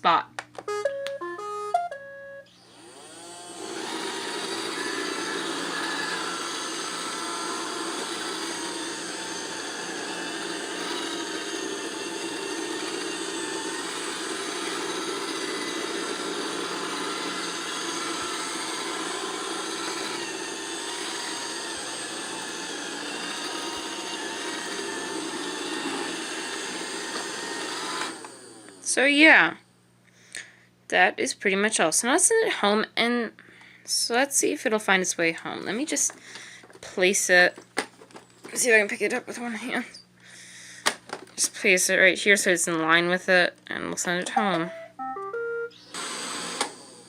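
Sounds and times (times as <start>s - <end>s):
robot vacuum running: 2.5s - 28.8s, 45.7s - 47.0s.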